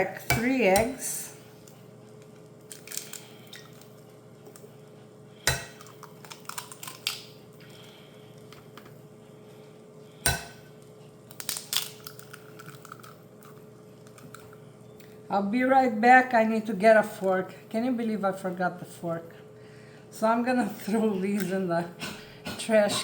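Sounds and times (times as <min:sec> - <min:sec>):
eggshell clicks and crackles: 0:01.6 - 0:04.7, 0:05.7 - 0:08.9, 0:11.2 - 0:15.2
egg cracking on a bowl: 0:02.2 - 0:04.7, 0:05.5 - 0:07.4, 0:11.3 - 0:15.2.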